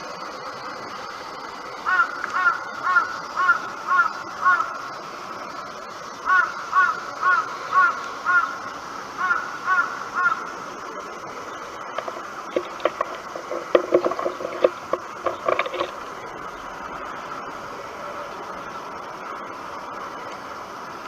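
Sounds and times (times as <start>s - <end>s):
steady background hiss: 0.0s - 21.0s
crow cawing: 1.8s - 4.8s, 6.2s - 8.6s, 9.2s - 10.5s.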